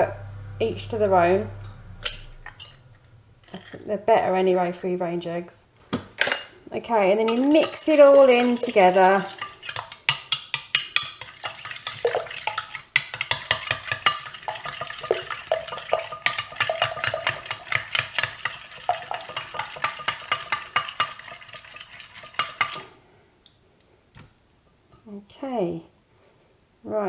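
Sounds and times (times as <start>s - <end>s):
utensil clinking in mixing bowl: 3.4s - 3.8s, 6.2s - 23.0s.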